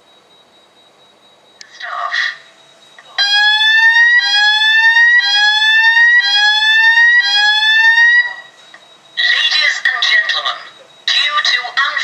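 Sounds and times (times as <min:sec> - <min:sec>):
fire alarm rising sweep tone: 0:02.2 - 0:09.8.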